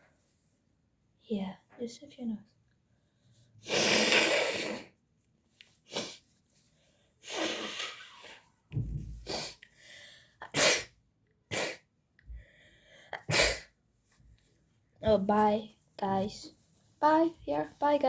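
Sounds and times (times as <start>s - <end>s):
boy sneezing: 3.6s - 4.9s, 5.9s - 6.2s, 7.3s - 8.2s, 9.3s - 9.6s, 10.4s - 11.9s, 13.1s - 13.7s.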